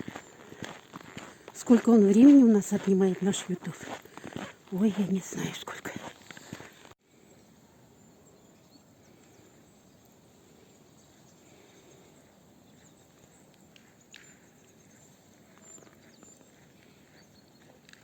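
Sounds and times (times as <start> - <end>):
faint outdoor hiss: 4.7 - 17.2.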